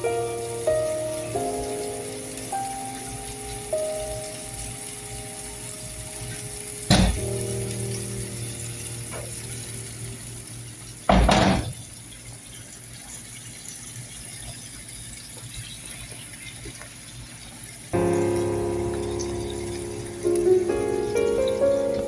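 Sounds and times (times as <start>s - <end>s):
kitchen tap water gushing: 0.0s - 22.0s.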